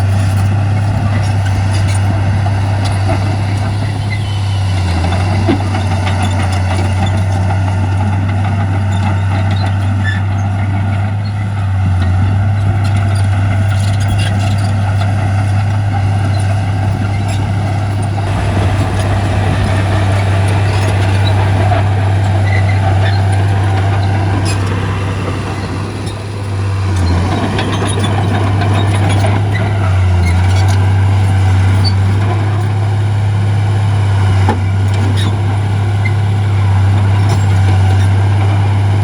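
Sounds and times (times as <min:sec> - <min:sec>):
heavy diesel engines droning: 0:00.0 - 0:39.0.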